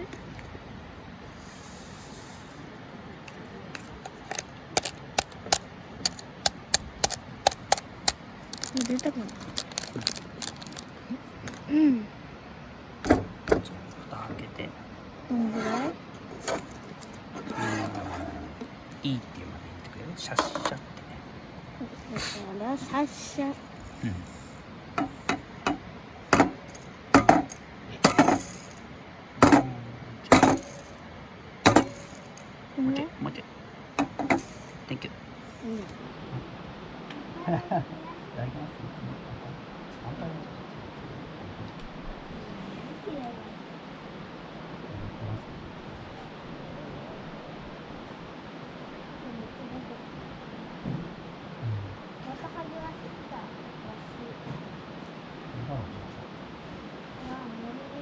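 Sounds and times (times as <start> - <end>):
spice shaker clicking: 3.3 - 11.6, 26.4 - 28.8, 31.7 - 32.5, 34.0 - 34.9.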